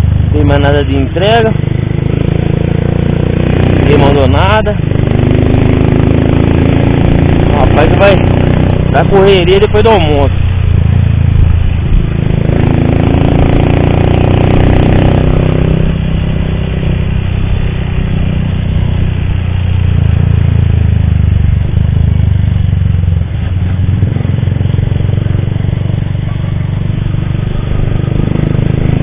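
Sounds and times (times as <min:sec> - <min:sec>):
motorcycle engine drone: 0:00.0 - 0:29.0
man talking: 0:00.3 - 0:01.6, 0:03.8 - 0:04.8, 0:07.5 - 0:08.2, 0:08.9 - 0:10.4.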